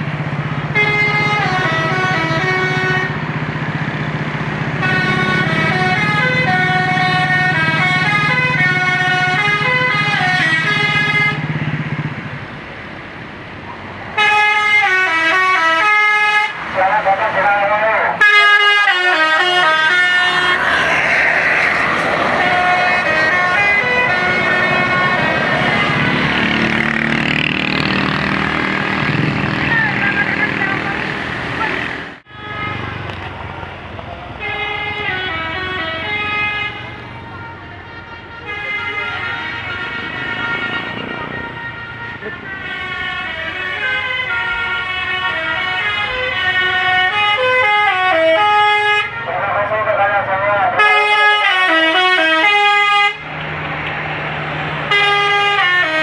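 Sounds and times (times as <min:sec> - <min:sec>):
bus engine running: 0:00.0 - 0:14.0, 0:18.6 - 0:44.0
musical bus horn melody: 0:00.7 - 0:03.3, 0:04.7 - 0:11.5, 0:14.2 - 0:16.6, 0:18.2 - 0:20.9, 0:22.2 - 0:27.0, 0:31.6 - 0:33.1, 0:34.4 - 0:49.3, 0:50.8 - 0:53.2, 0:54.9 - 0:56.0
rushing noise: 0:19.2 - 0:29.7.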